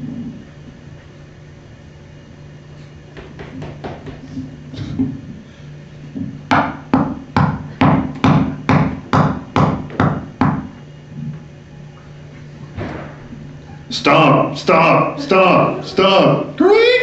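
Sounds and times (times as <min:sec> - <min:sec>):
sharp knocks: 0:03.2 - 0:04.3, 0:06.2 - 0:10.7.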